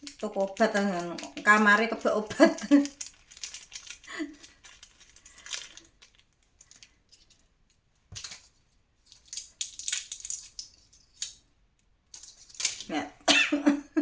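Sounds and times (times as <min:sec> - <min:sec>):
packets and bottles rustling: 0:00.0 - 0:07.5.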